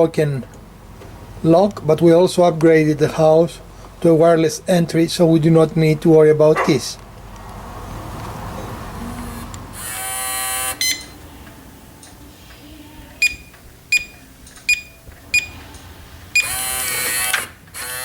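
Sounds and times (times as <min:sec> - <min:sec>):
deadbolt motor buzzing: 0:09.3 - 0:10.8, 0:15.2 - 0:18.0
short keypad beeps: 0:10.8 - 0:11.2, 0:13.2 - 0:15.6, 0:16.4 - 0:16.6.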